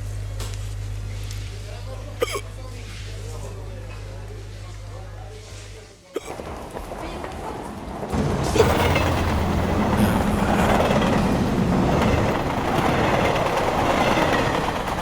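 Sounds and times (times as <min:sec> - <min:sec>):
loud steady rumbling: 0:08.1 - 0:15.0
low hum: 0:08.2 - 0:13.9.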